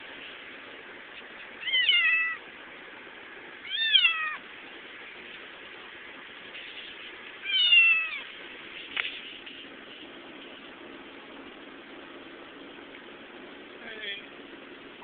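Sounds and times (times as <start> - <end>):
steady background hiss: 0.0 - 15.0
kitten meowing: 1.6 - 2.4, 3.6 - 4.4, 7.4 - 8.3.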